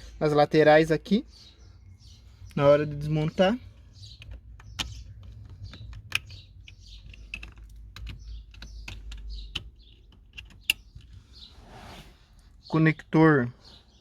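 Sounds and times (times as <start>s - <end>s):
plastic connectors clicking and rattling: 4.2s - 11.1s.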